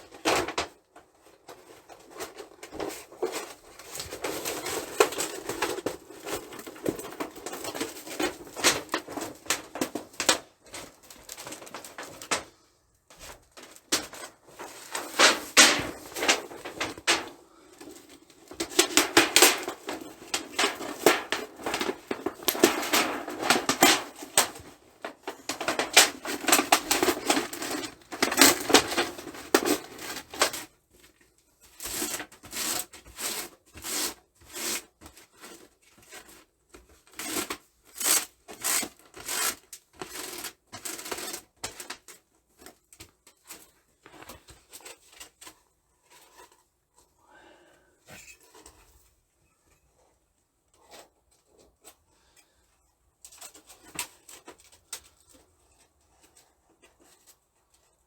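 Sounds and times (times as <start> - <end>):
small hard objects clicking and rattling: 13.6 - 30.7.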